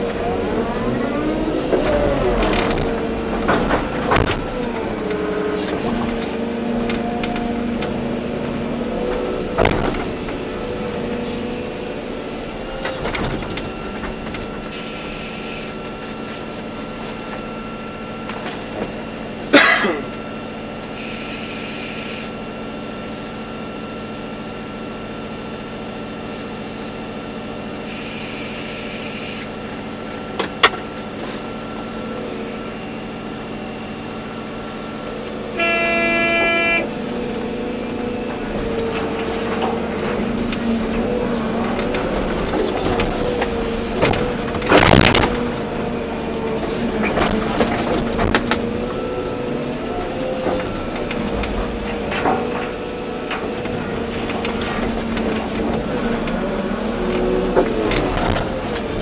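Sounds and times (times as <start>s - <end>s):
excavator diesel engine running: 0.0s - 59.0s
loud horn blast: 35.4s - 37.5s.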